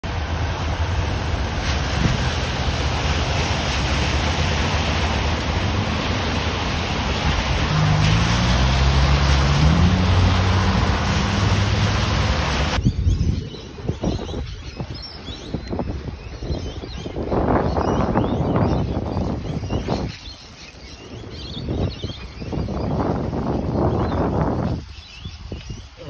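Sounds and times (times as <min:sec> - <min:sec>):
car engine: 0:00.0 - 0:12.8
road and wind noise: 0:00.0 - 0:26.0.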